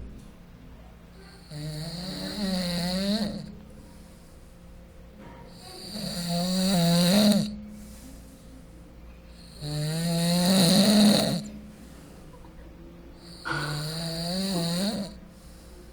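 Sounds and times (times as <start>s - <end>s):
quiet breathing: 0.0s - 15.9s
person snoring: 1.4s - 3.6s, 5.5s - 7.6s, 9.4s - 11.5s, 13.2s - 15.9s.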